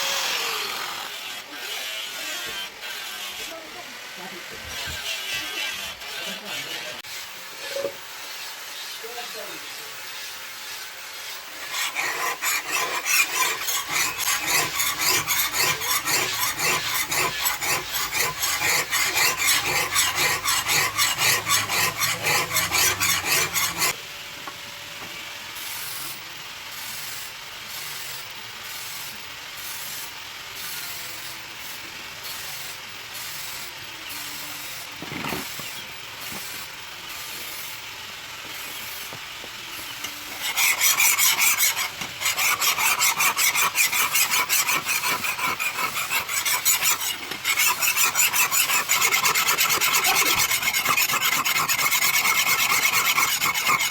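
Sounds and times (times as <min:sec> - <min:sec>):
file scraping knife blade: 0:04.7 - 0:08.0, 0:11.4 - 0:24.0, 0:39.7 - 0:53.9.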